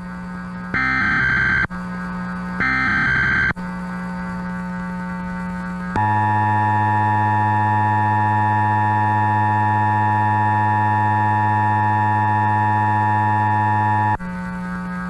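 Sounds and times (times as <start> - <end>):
buzzy two-tone alert tone: 0.8 - 1.7, 2.6 - 3.5.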